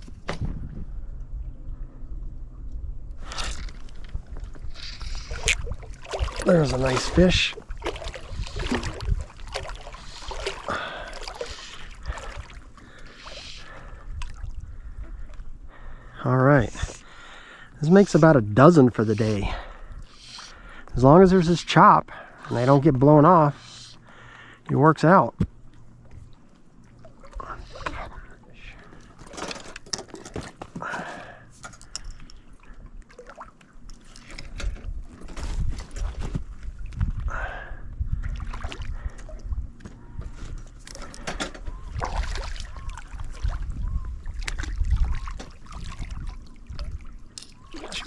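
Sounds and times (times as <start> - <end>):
water splashing and trickling: 3.2 - 15.4, 24.7 - 37.3, 38.1 - 39.7, 40.3 - 48.0.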